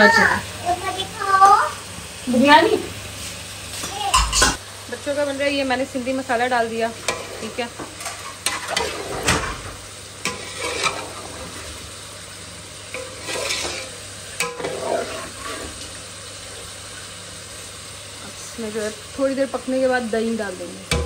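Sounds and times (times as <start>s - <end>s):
food sizzling: 0.0s - 21.0s
spoon scraping a pot: 7.0s - 9.6s, 10.2s - 11.8s, 12.9s - 16.0s.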